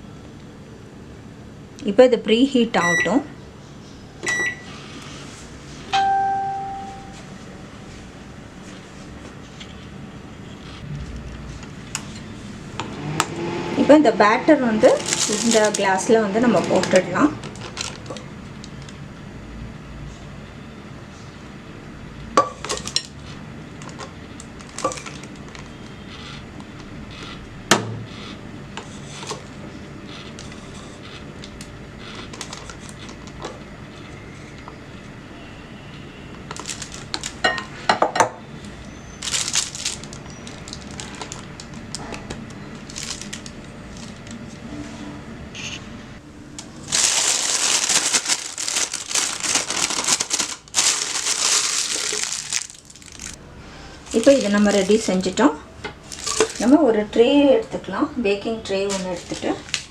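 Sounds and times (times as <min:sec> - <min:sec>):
plastic piping bag crinkling: 0:14.9 - 0:19.0, 0:36.5 - 0:37.4, 0:39.2 - 0:42.1, 0:42.7 - 0:44.4, 0:46.6 - 0:53.4, 0:54.1 - 0:55.4, 0:56.0 - 0:56.8, 0:58.8 - 0:59.9.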